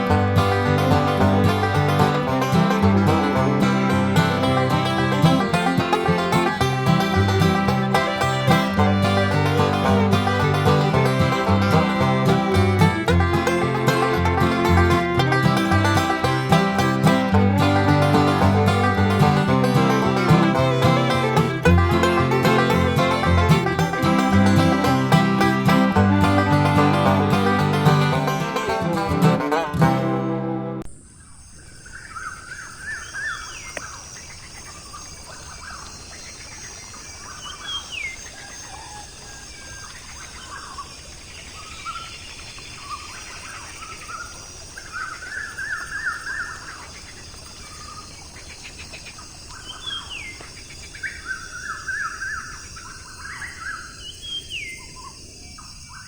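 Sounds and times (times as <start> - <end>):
birds chirping: 0.0 - 29.8
banjo bluegrass music: 0.0 - 30.9.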